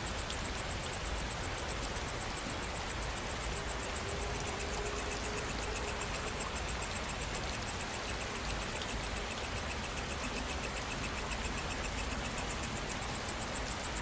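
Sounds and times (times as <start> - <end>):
night insects chirping: 0.0 - 14.0
steady rain: 0.0 - 14.0.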